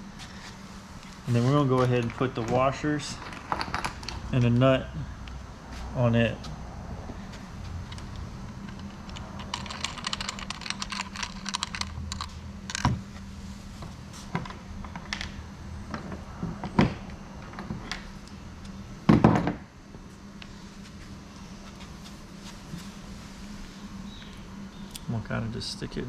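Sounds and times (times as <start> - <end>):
metal hardware clicking and rattling: 7.8 - 12.9.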